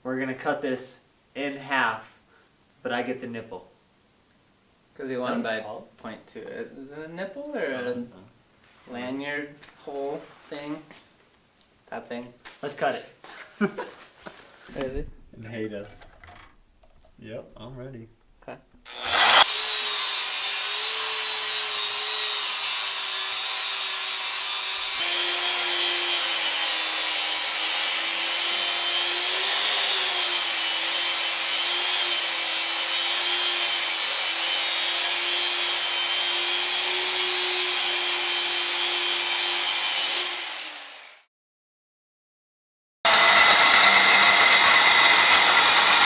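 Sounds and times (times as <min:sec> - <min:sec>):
power tool cutting metal: 0:18.9 - 0:41.3, 0:43.1 - 0:46.0.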